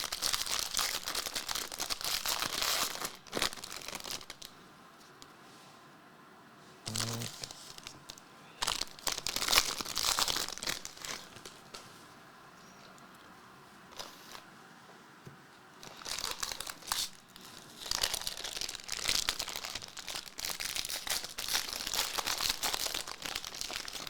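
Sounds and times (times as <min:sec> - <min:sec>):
card pack wrappers crinkling and tearing: 0:00.0 - 0:04.6, 0:06.9 - 0:11.8, 0:15.8 - 0:24.0.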